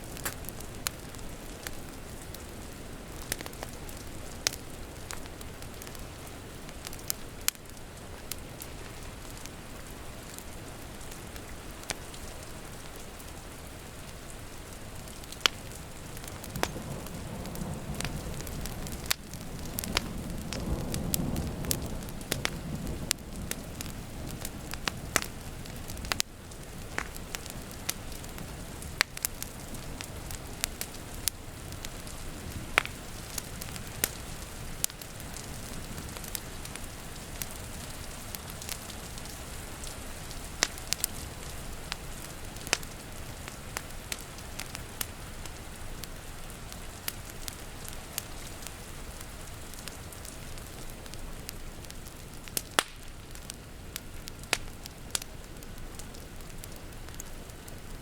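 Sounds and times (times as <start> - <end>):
rain hissing: 0.0 - 58.0
wood fire crackling and popping: 0.0 - 58.0
thunder rumbling: 16.2 - 26.1.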